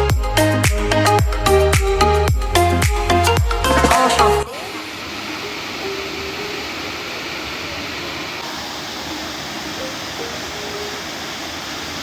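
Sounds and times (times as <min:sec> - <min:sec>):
electronic dance music: 0:00.0 - 0:04.9.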